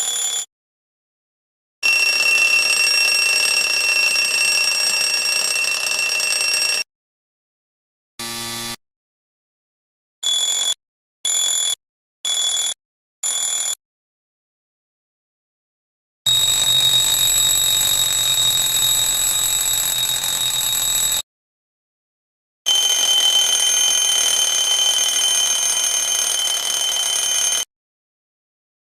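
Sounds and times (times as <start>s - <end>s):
alarm clock beeps: 0.0s - 0.5s, 1.8s - 6.9s, 10.2s - 13.8s, 16.3s - 21.2s, 22.7s - 27.7s
continuous high alarm tone: 1.8s - 6.9s, 16.3s - 21.2s, 22.7s - 27.7s.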